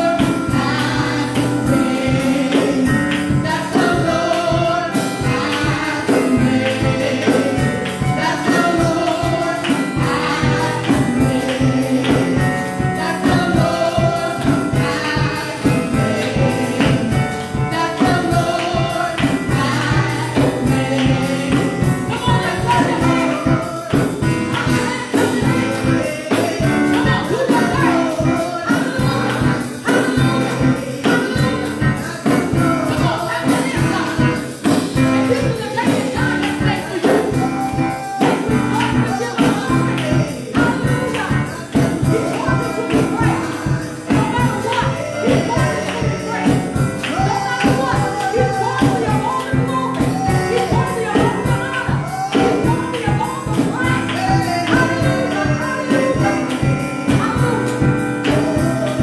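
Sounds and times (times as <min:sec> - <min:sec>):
choir singing over a beat: 0:00.0 - 0:59.0
tambourine shaken and struck: 0:00.0 - 0:59.0.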